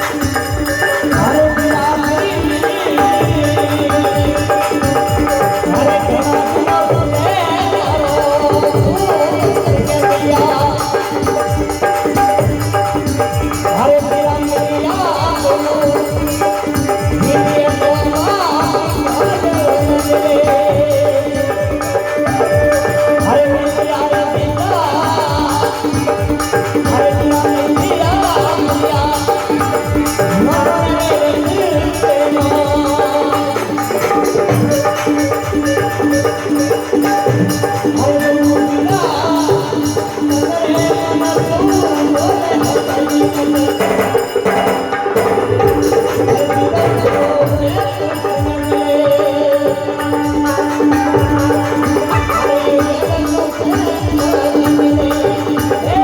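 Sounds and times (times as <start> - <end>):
hand drum beat: 0.0 - 56.0
jingling percussion: 0.0 - 56.0
person singing wavering melody: 13.4 - 56.0.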